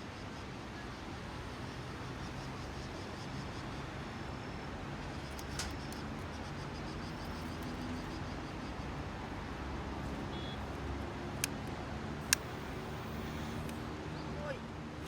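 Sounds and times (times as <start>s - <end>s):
sharp clicks: 5.2s - 6.1s, 11.3s - 13.8s.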